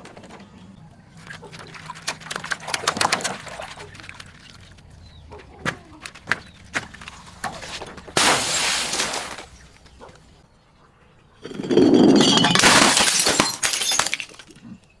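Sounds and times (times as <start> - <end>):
glass crunching and breaking: 7.9 - 9.6, 11.4 - 14.7
sharp glass clinks: 11.5 - 14.4.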